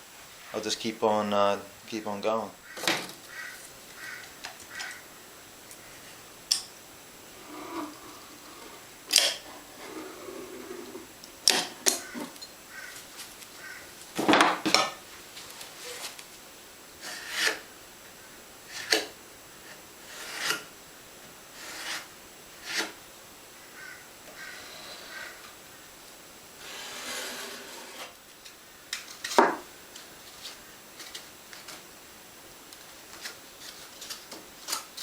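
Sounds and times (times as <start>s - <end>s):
short scraping rubs: 26.6s - 28.2s.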